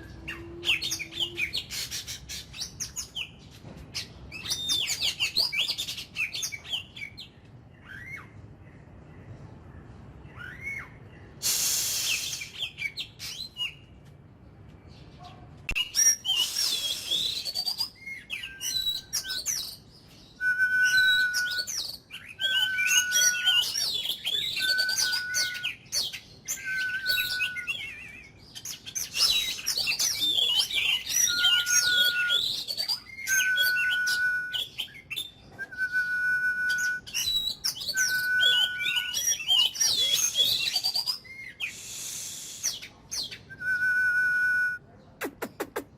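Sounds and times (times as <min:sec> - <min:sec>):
bird singing chirps and twitters: 0:00.0 - 0:11.4, 0:12.4 - 0:14.0, 0:14.7 - 0:41.8
bird whistled note: 0:15.8 - 0:19.6, 0:20.4 - 0:25.8, 0:26.6 - 0:28.2, 0:30.8 - 0:34.8, 0:35.6 - 0:42.9, 0:43.6 - 0:44.8.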